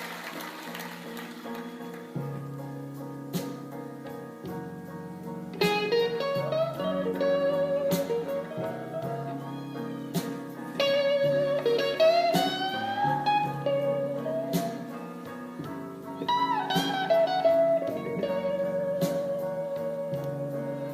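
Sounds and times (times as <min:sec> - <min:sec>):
sustained backing chords: 0:02.0 - 0:20.9
electric guitar bending notes: 0:05.5 - 0:20.9.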